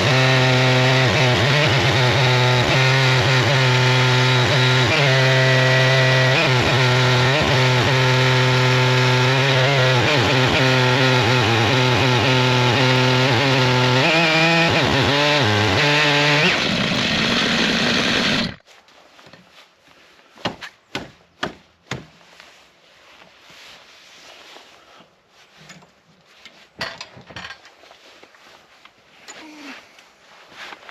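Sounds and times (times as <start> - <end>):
chainsaw ripping a log: 0.0 - 18.6.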